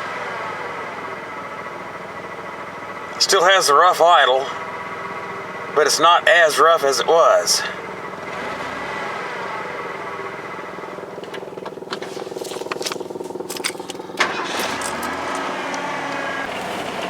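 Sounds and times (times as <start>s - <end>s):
truck engine idling roughly: 0.0s - 17.0s.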